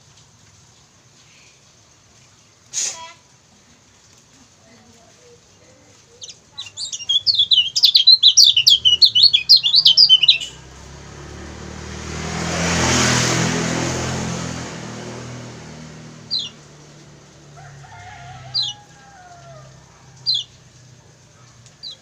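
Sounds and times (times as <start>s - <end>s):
bird high chirps: 6.1s - 10.7s, 16.2s - 16.6s, 18.5s - 18.8s, 20.2s - 20.6s, 21.8s - 22.0s
vehicle passing: 6.7s - 22.0s.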